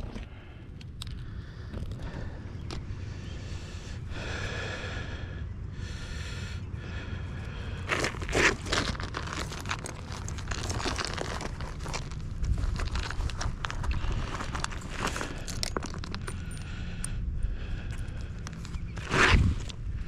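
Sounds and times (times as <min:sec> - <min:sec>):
wind rumble on microphone: 0:00.0 - 0:20.0
shingles scraping and crackling: 0:07.9 - 0:16.6.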